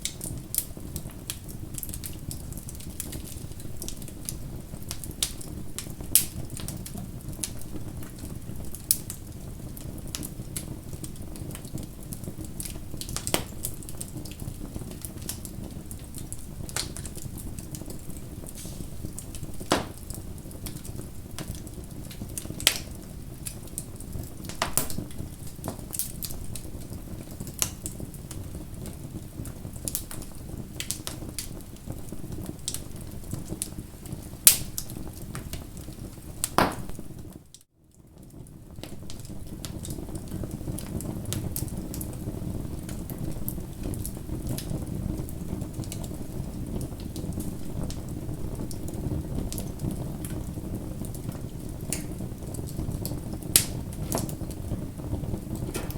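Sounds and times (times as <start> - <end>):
campfire crackling: 0.0 - 55.9
wood pops: 19.7 - 20.0, 36.6 - 37.0, 55.6 - 55.9.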